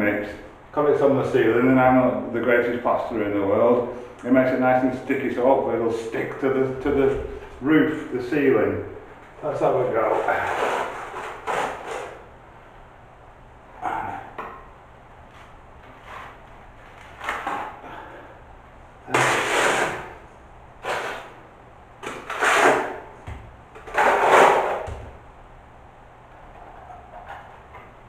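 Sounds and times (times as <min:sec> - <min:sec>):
mortar scraping into a crack: 0:19.1 - 0:20.2, 0:20.8 - 0:21.4, 0:22.1 - 0:23.0, 0:23.9 - 0:25.0.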